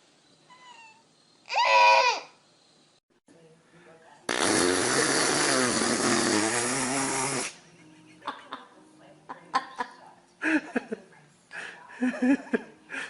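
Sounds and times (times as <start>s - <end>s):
loud raspy fart: 4.3s - 7.6s.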